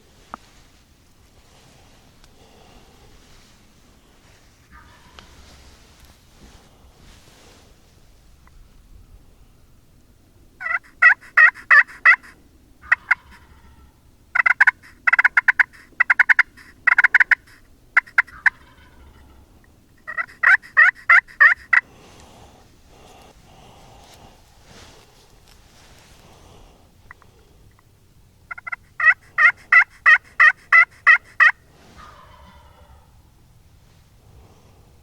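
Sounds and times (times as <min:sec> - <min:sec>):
turkey yelping: 0:04.7 - 0:05.4, 0:10.6 - 0:19.4, 0:20.0 - 0:21.9, 0:28.5 - 0:33.2.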